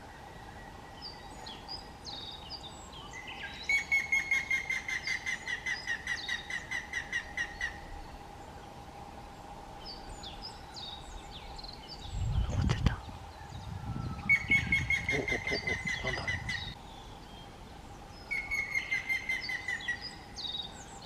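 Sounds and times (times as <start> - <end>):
small birds chirping: 0.9 - 21.0
woodpecker whistled song: 13.3 - 17.5, 18.2 - 21.0.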